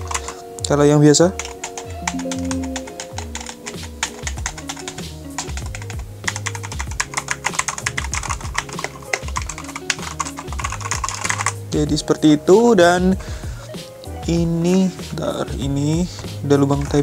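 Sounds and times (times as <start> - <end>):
computer keyboard typing: 0.0 - 0.3, 1.4 - 11.6
background music: 0.0 - 17.0.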